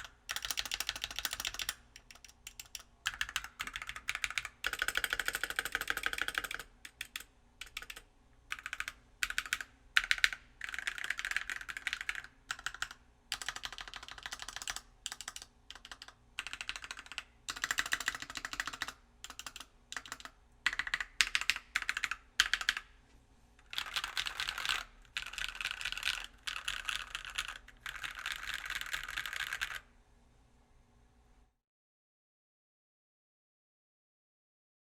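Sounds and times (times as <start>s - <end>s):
keyboard key presses: 0.0s - 22.8s, 23.6s - 29.8s
mechanical keyboard typing: 0.0s - 22.9s, 23.6s - 29.9s.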